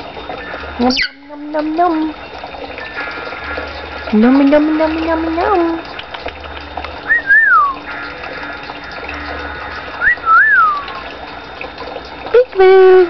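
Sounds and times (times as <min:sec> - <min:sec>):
parrot wolf whistle: 0:07.1 - 0:07.9, 0:10.0 - 0:11.0.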